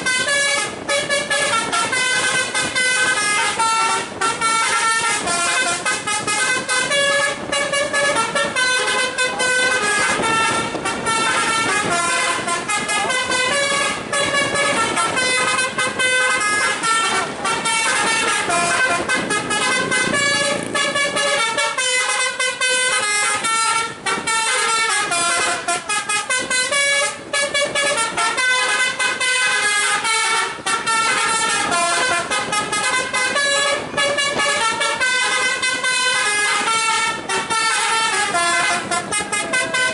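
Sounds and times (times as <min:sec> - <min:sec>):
bus horn playing a melody: 0:00.0 - 0:39.9.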